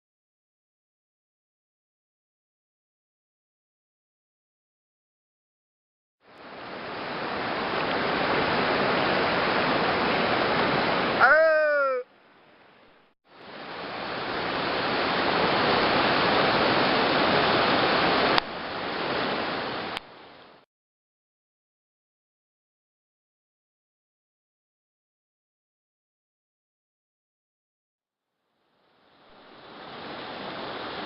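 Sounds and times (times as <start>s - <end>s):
waterfall rushing: 6.4s - 12.0s, 13.4s - 20.6s, 29.2s - 31.0s
person shouting: 11.2s - 12.1s.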